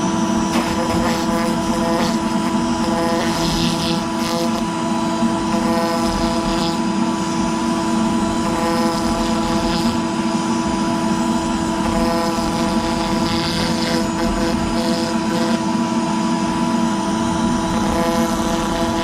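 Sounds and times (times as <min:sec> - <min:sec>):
router spindle whine: 0:00.0 - 0:19.0
cutting hiss: 0:00.5 - 0:04.7.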